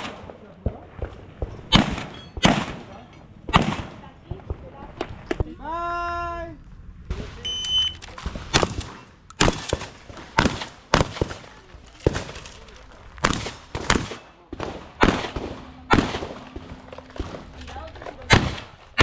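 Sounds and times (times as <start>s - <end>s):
shotgun shots: 0.0s - 4.1s, 8.1s - 12.6s, 13.2s - 19.0s.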